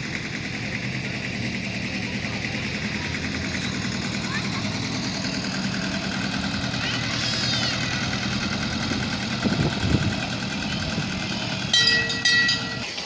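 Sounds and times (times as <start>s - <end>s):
engine idling: 0.0s - 13.0s
people's voices: 1.4s - 11.6s.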